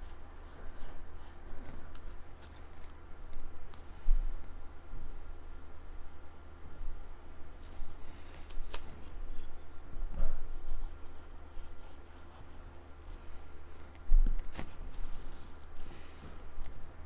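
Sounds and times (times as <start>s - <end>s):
paper rustling and rubbing: 0.0s - 3.1s, 7.6s - 9.9s, 10.5s - 17.0s.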